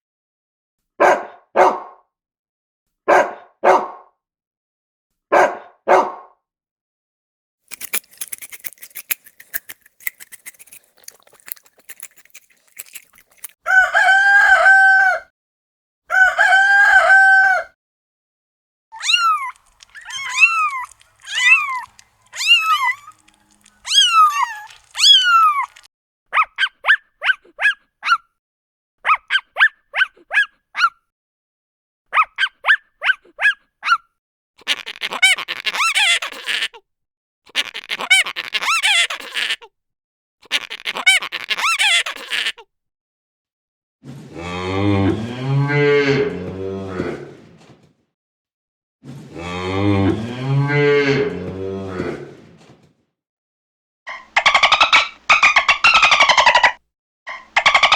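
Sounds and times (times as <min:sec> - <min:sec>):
rooster crowing: 0:13.6 - 0:15.3, 0:16.1 - 0:17.7
chickens clucking: 0:19.1 - 0:25.9.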